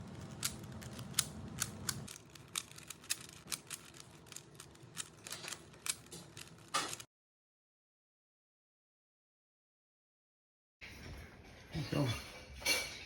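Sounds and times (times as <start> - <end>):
puzzle cube plastic clicks: 0.0 - 7.1.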